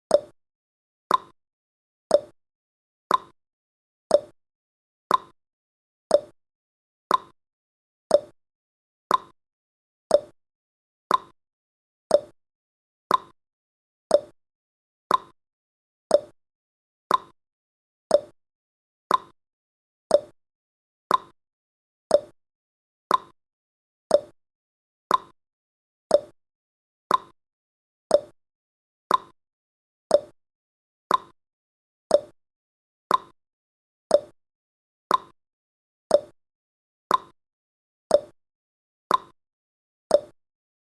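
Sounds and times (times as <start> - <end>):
timer ticking: 0.1 - 0.3, 1.1 - 1.3, 2.1 - 2.3, 3.1 - 3.4, 4.1 - 4.4, 5.1 - 5.4, 6.1 - 6.4, 7.1 - 7.4, 8.1 - 8.4, 9.1 - 9.4, 10.1 - 10.4, 11.1 - 11.4, 12.1 - 12.4, 13.1 - 13.4, 14.1 - 14.4, 15.1 - 15.4, 16.1 - 16.4, 17.1 - 17.4, 18.1 - 18.4, 19.1 - 19.4, 20.1 - 20.4, 21.1 - 21.4, 22.1 - 22.4, 23.1 - 23.4, 24.1 - 24.4, 25.1 - 25.4, 26.1 - 26.4, 27.1 - 27.4, 28.1 - 28.4, 29.1 - 29.4, 30.1 - 30.4, 31.1 - 31.4, 32.1 - 32.4, 33.1 - 33.4, 34.1 - 34.4, 35.1 - 35.4, 36.1 - 36.4, 37.1 - 37.4, 38.1 - 38.4, 39.1 - 39.4, 40.1 - 40.4.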